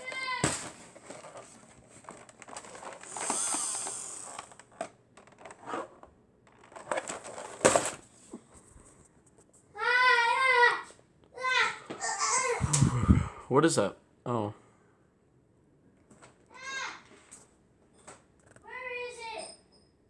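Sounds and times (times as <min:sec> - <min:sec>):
objects rustling: 0:00.0 - 0:09.7.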